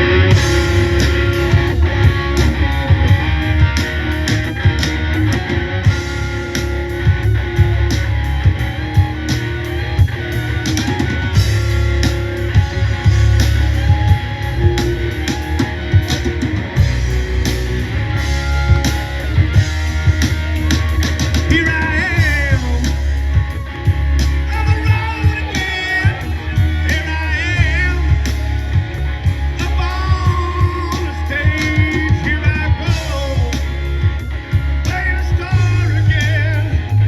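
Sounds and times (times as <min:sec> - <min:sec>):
drum-kit beat: 0:00.0 - 0:37.0
rock guitar playing: 0:00.0 - 0:37.0.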